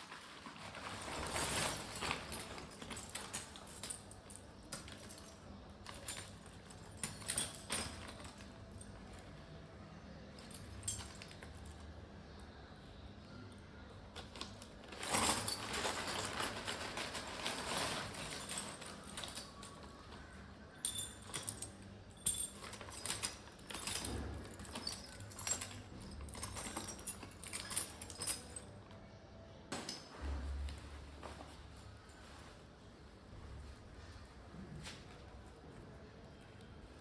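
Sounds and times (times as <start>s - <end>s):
rustling: 0.0s - 3.6s, 14.8s - 20.2s.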